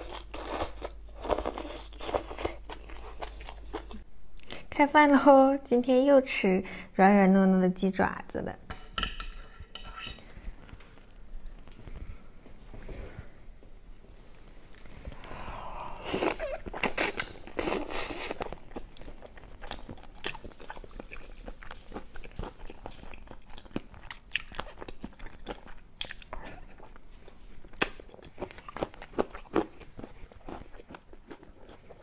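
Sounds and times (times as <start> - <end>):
close-miked eating and chewing: 0.0 - 4.6, 14.4 - 32.0
wet mouth noises: 16.0 - 18.6.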